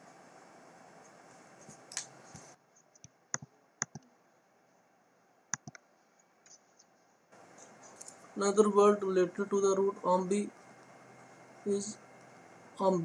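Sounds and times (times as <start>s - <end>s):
faint steady hiss: 0.0s - 2.8s, 7.3s - 13.0s.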